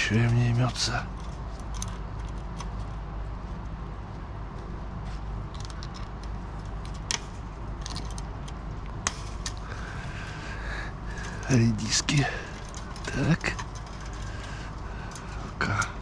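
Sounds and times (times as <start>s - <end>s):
steady low hum: 0.0s - 16.0s
light metallic clinks and jingles: 11.1s - 16.0s.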